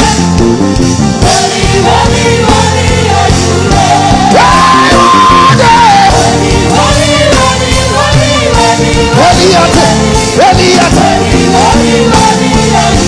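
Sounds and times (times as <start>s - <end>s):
instrumental backing music: 0.0s - 13.0s
person singing: 4.2s - 6.4s.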